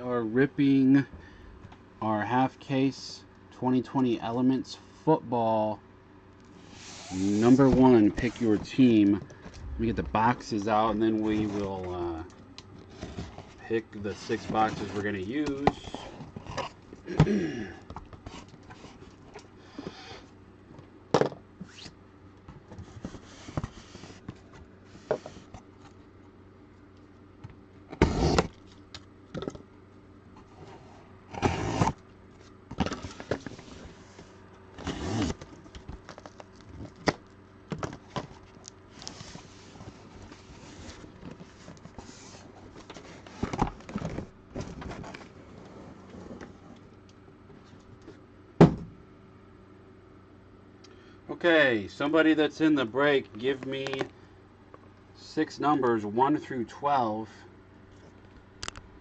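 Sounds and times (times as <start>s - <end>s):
faint steady hum: 0.0s - 59.0s
boxes thumping and sliding: 6.7s - 11.9s, 14.2s - 17.4s, 22.7s - 24.4s.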